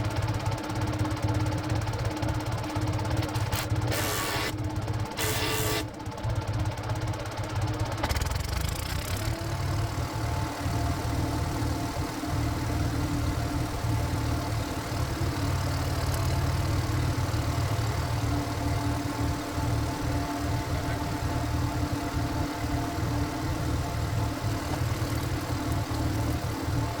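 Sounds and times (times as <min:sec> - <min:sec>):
diesel engine chugging: 0:00.0 - 0:27.0
steady high whine: 0:03.4 - 0:06.0, 0:08.7 - 0:27.0.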